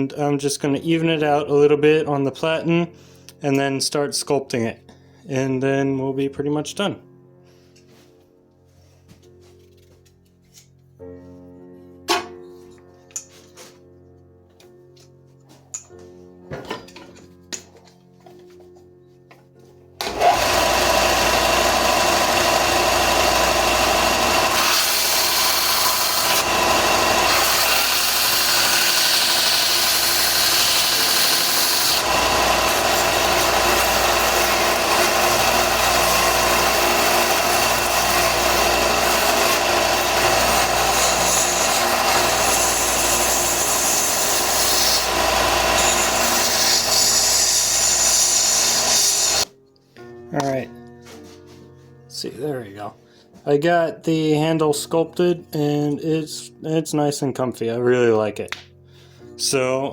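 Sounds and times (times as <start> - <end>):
belt grinder sanding: 20.0 - 49.5.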